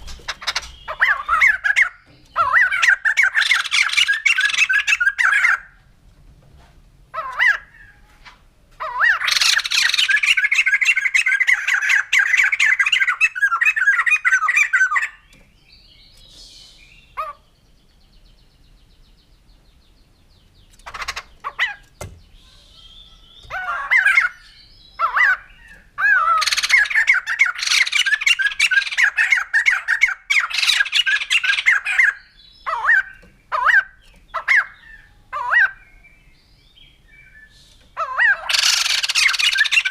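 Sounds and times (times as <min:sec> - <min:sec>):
bird cackling laughing song: 0:00.3 - 0:05.7, 0:08.8 - 0:15.2, 0:23.5 - 0:35.8, 0:38.0 - 0:39.9
bird single calls: 0:37.2 - 0:39.9.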